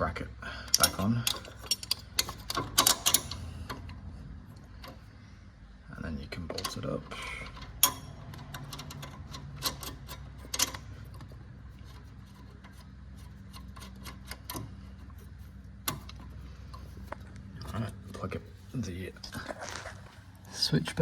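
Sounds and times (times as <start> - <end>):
hand ratchet clicking: 0.7 - 3.9.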